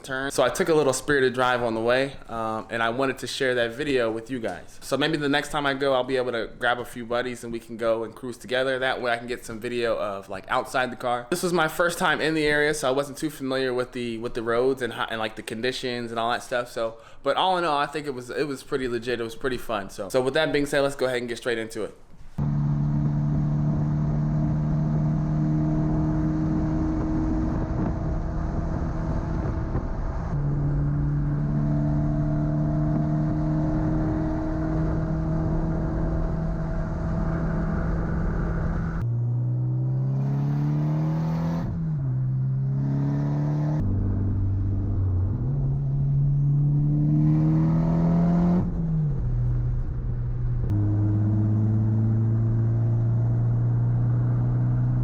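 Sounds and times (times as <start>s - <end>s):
turbocharged car engine revving: 22.4s - 55.0s.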